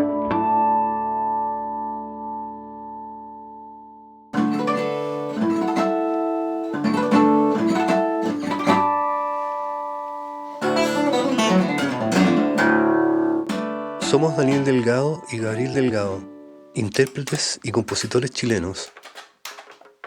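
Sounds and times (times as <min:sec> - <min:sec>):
plucked string instrument chords: 0:04.4 - 0:17.3.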